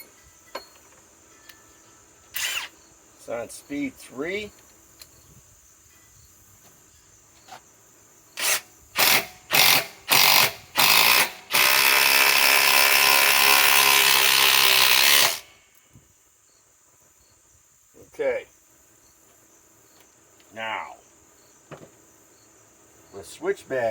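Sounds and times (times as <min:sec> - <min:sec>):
impact wrench driving a fastener: 0:02.4 - 0:02.8, 0:08.4 - 0:15.5.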